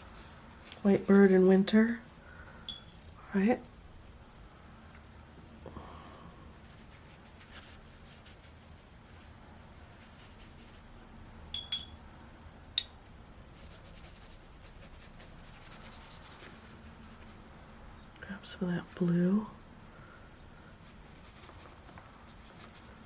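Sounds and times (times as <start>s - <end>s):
sharp ringing clinks: 2.7s - 3.0s, 11.5s - 12.0s
art tools scratching paper: 13.6s - 16.7s.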